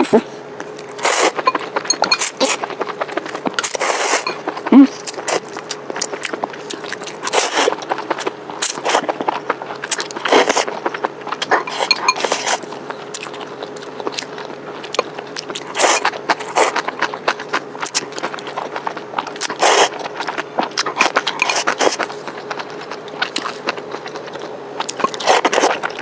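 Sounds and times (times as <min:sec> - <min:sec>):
wet chewing clicks: 0:00.8 - 0:26.0
loud noodle slurps: 0:01.0 - 0:01.4, 0:03.6 - 0:05.5, 0:07.2 - 0:07.8, 0:19.6 - 0:20.0.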